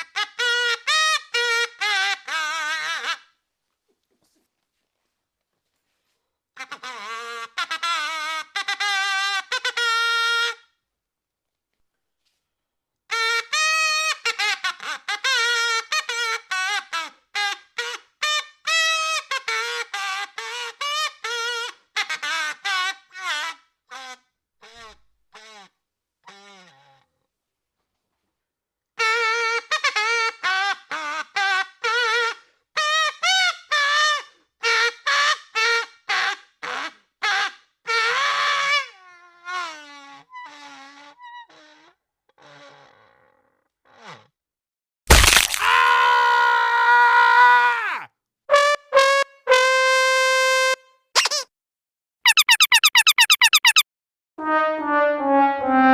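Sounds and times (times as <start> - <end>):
comedic trumpet-like honking tune: 48.5 - 51.4, 52.3 - 53.8, 54.4 - 55.9
wavering comedy horn honks: 54.4 - 55.9.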